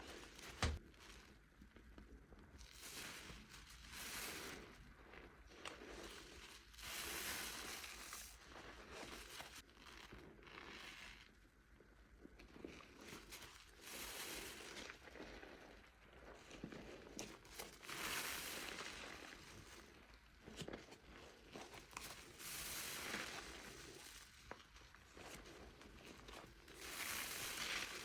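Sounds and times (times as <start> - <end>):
soap foam squishing: 0.0 - 28.0.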